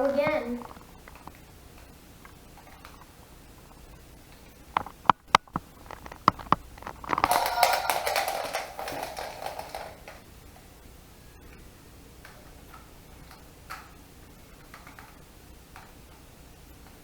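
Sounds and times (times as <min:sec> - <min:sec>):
spinning top rattling whir: 0:05.8 - 0:10.3
wind-up toy clicks: 0:07.1 - 0:10.2.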